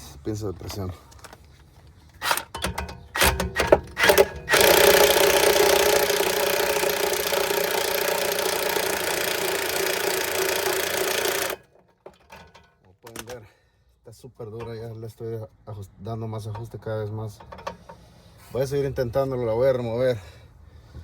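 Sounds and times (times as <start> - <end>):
impact wrench running: 2.2 - 11.8
tools clinking: 2.2 - 13.3.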